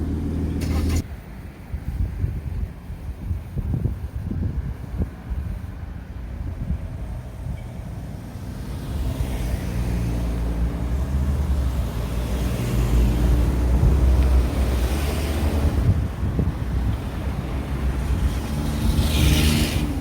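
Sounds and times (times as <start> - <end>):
vehicle passing close by: 7.3 - 20.0.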